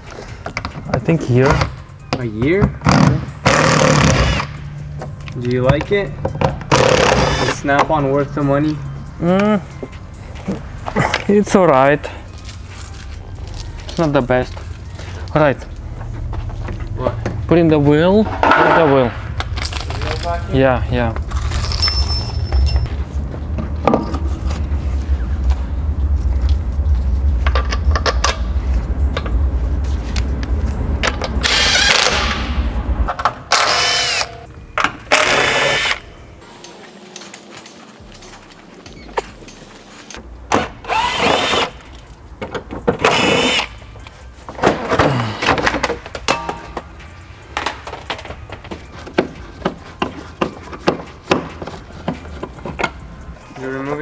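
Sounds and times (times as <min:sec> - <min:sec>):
metal tools clinking and rattling: 0:12.1 - 0:16.0, 0:19.4 - 0:23.0
low rumble: 0:12.4 - 0:33.2.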